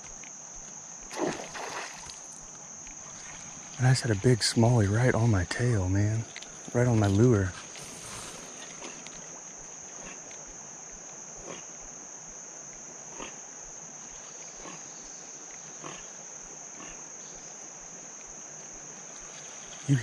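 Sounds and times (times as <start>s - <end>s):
insects droning: 0.0s - 20.0s
muskrat snarling: 13.1s - 13.4s, 15.8s - 17.1s.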